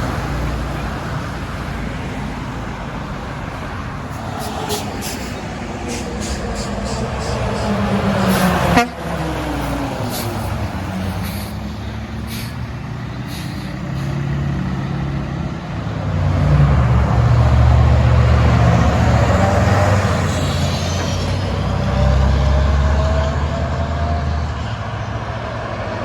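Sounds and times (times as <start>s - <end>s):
diesel trucks passing: 0.0s - 26.0s.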